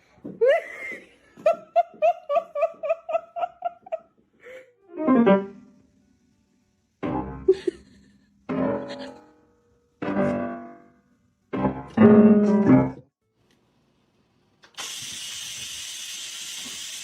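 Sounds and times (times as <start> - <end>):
piano chords: 4.8 - 6.0, 7.0 - 7.8, 8.5 - 13.1
steady hiss: 14.6 - 17.0.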